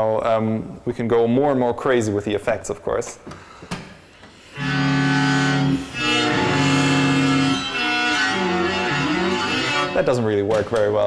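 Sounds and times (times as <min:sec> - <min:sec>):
electric cello bowed with effects: 0:04.4 - 0:10.2.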